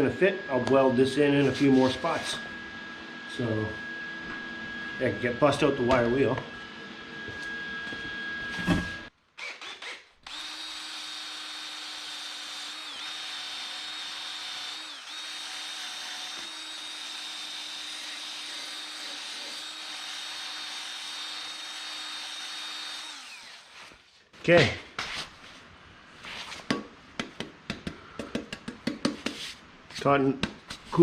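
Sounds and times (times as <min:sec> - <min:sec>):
power tool wire wheel whine: 0:07.3 - 0:24.0.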